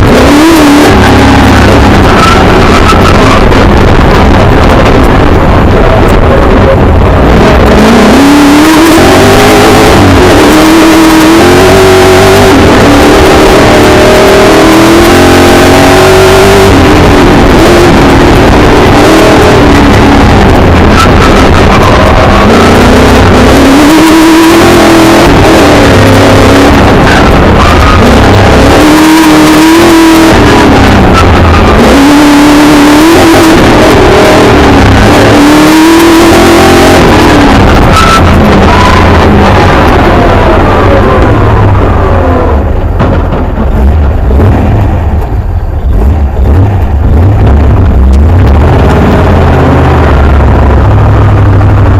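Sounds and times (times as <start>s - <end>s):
racing car engine revving: 0.0s - 51.9s.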